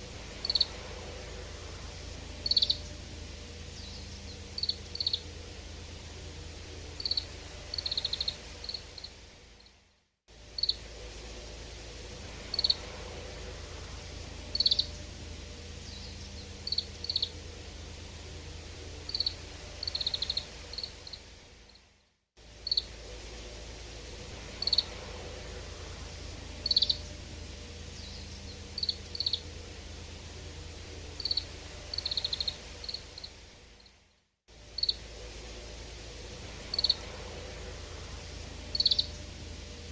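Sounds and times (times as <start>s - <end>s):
low background hiss: 0.0s - 39.9s
bird chirping: 2.4s - 3.0s, 3.6s - 5.3s, 7.0s - 9.1s, 14.5s - 15.1s, 15.8s - 17.4s, 26.6s - 27.2s, 27.9s - 29.5s, 38.7s - 39.3s.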